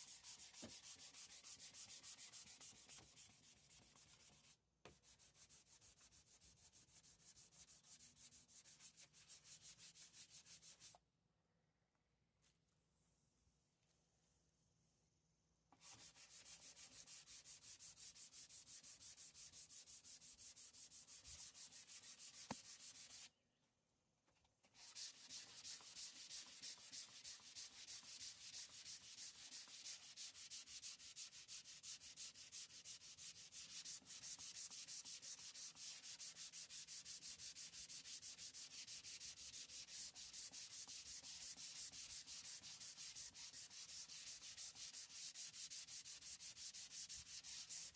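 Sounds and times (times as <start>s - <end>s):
sandpaper rubbing on fiberglass: 24.8s - 47.9s.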